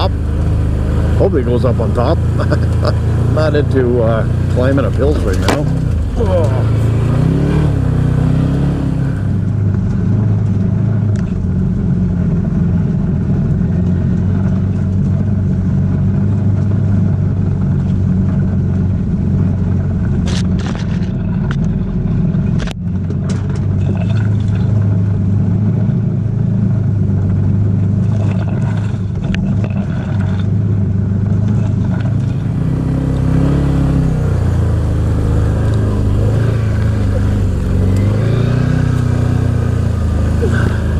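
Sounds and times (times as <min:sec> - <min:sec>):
utility vehicle engine running: 0:00.0 - 0:40.9
sharp clicks and scrapes: 0:20.2 - 0:21.8, 0:28.0 - 0:30.6.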